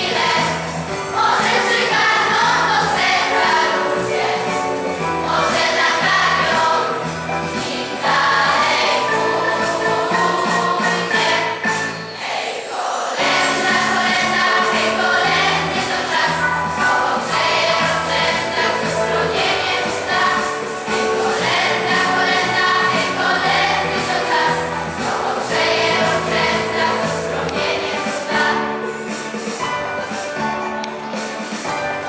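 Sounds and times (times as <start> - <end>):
choir singing a carol: 0.0 - 30.2.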